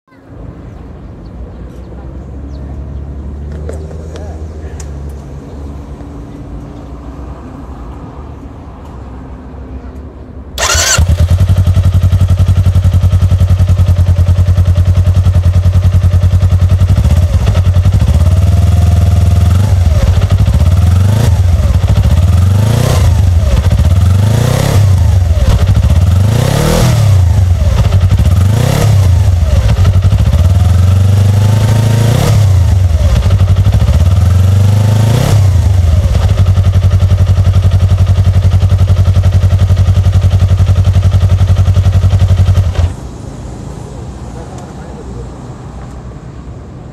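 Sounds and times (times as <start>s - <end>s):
motorcycle engine revving: 10.6s - 43.1s.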